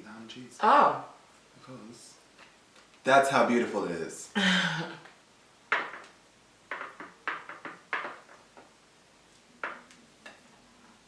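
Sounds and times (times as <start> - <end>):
tableware knocks and clinks: 5.7 - 6.1, 6.7 - 8.4, 9.6 - 9.9.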